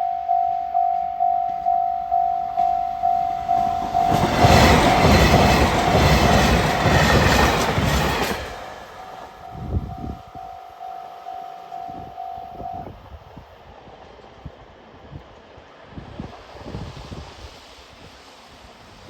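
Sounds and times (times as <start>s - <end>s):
level-crossing warning bell: 0.0s - 13.2s
train passing with wheels thumping: 0.0s - 19.0s.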